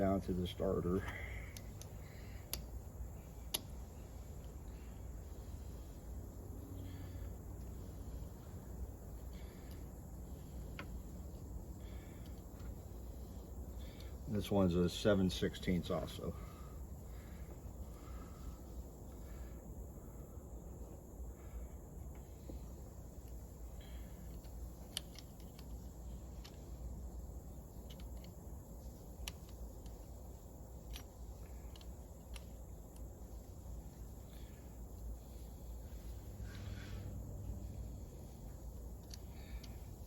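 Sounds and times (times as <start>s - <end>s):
low background rumble: 0.0s - 40.0s
wrench metallic clicks: 30.8s - 33.1s.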